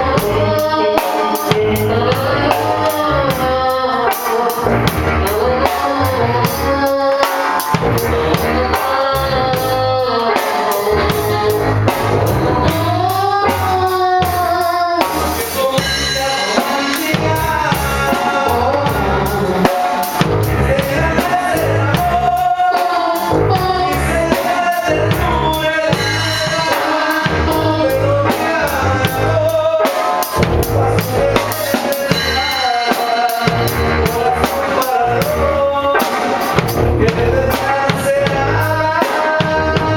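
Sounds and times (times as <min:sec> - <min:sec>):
band playing live: 0:00.0 - 0:39.9
drum kit steady beat: 0:00.0 - 0:39.9.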